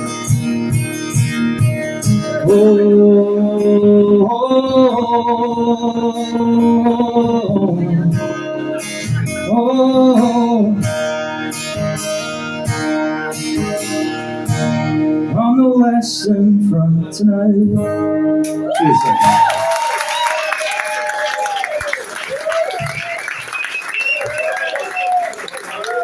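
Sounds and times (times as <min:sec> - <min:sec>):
acoustic guitar strumming: 0:00.0 - 0:19.4
person singing: 0:02.1 - 0:11.1.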